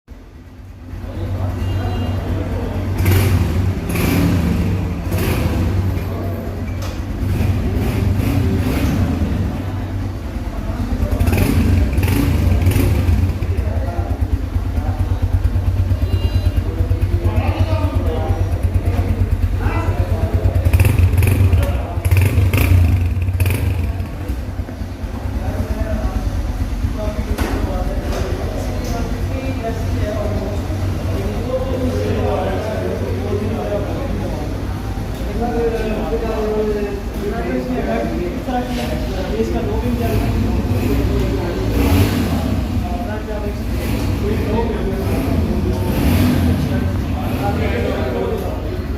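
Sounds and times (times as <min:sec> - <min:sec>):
motorcycle engine revving: 0:00.3 - 0:48.9.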